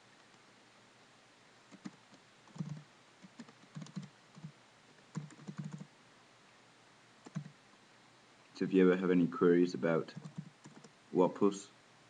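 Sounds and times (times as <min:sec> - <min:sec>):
typing on computer keyboard: 0:01.7 - 0:04.5, 0:05.1 - 0:05.9, 0:07.2 - 0:07.6, 0:10.1 - 0:10.9.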